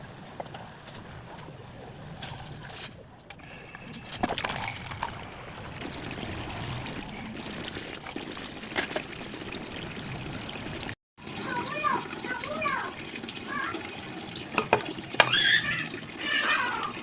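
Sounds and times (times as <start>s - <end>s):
water trickling and splashing: 0.0s - 17.0s.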